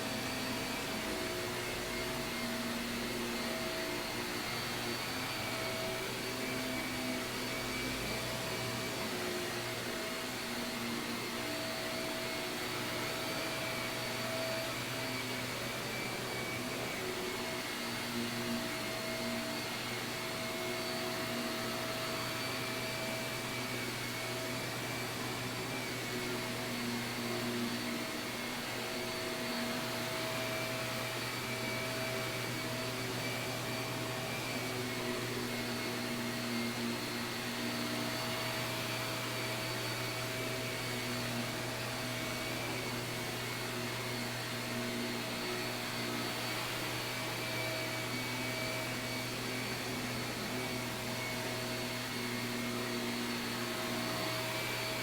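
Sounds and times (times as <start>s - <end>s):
vacuum cleaner running on carpet: 0.0s - 55.0s.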